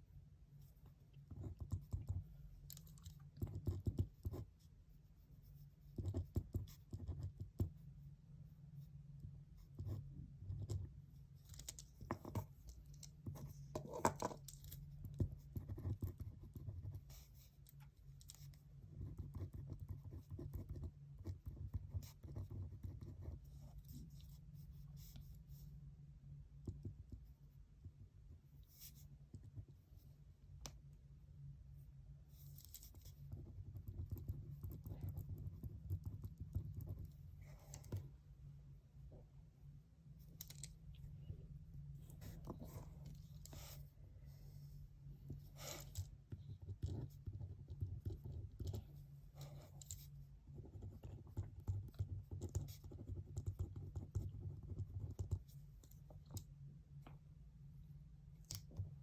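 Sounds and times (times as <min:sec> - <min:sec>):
steady low hum: 0:00.0 - 0:59.0
pen scratching on paper: 0:03.3 - 0:04.7, 0:05.4 - 0:07.8, 0:13.2 - 0:14.4, 0:15.0 - 0:17.6, 0:18.3 - 0:25.4, 0:42.1 - 0:43.8, 0:45.3 - 0:55.6.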